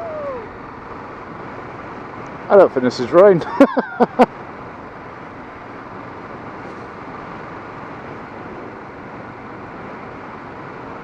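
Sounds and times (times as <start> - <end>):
wind rush: 0.0 - 2.5
motorcycle road noise: 0.0 - 11.0.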